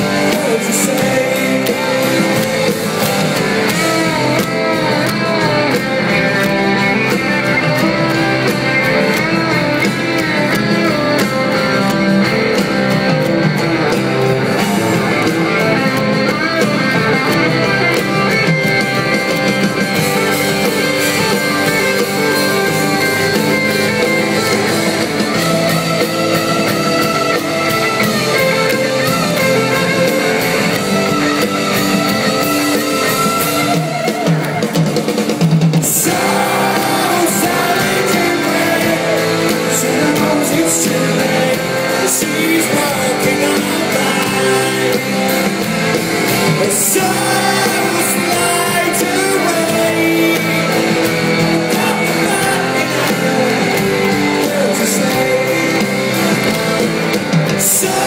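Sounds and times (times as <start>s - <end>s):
electric guitar: 0.0s - 58.0s
live rock band playing: 0.0s - 58.0s.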